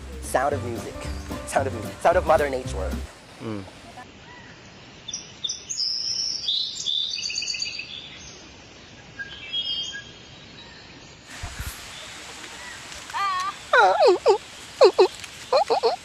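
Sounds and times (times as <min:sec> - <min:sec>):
faint forest hiss: 0:02.8 - 0:16.0
birds chirping: 0:09.2 - 0:16.0.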